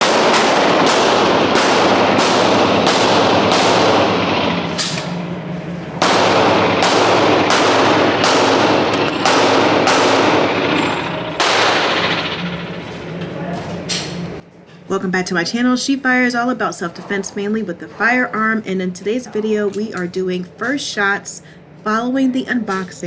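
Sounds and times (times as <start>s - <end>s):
rapid gunshots: 0.0s - 5.4s, 6.0s - 12.8s.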